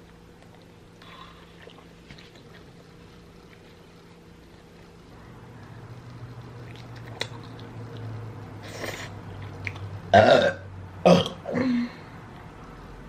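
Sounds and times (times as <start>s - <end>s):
woman burping loudly: 10.1s - 12.0s.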